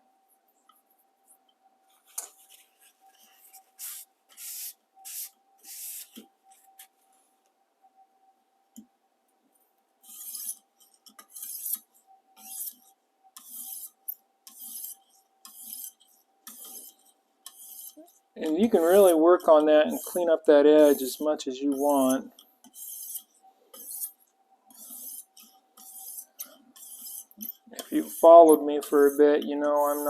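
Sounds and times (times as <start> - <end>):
sharpening stone rasping on knife: 10.0 - 30.0.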